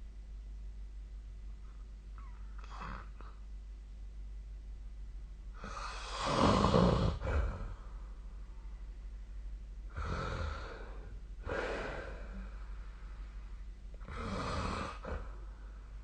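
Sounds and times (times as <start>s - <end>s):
steady low hum: 0.0s - 16.0s
person snoring: 5.6s - 7.8s, 9.9s - 12.6s, 14.0s - 15.4s.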